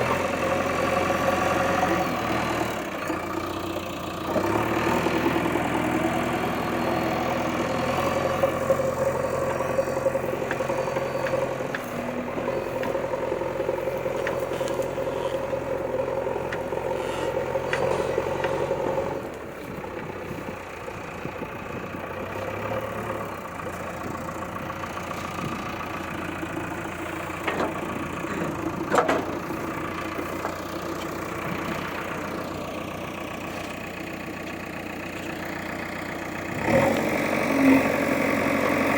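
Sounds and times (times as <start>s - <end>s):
construction machine engine running: 0.0s - 38.9s.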